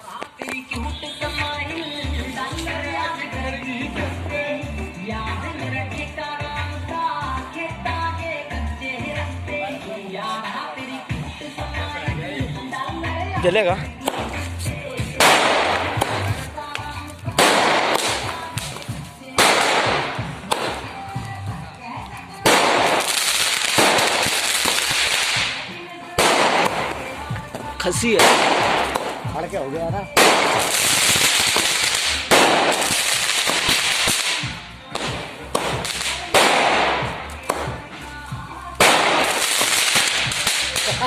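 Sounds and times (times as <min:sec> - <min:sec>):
firecracker bangs with hiss: 0:14.0 - 0:16.6, 0:17.2 - 0:21.3, 0:22.4 - 0:29.4, 0:30.1 - 0:38.1, 0:38.7 - 0:41.0.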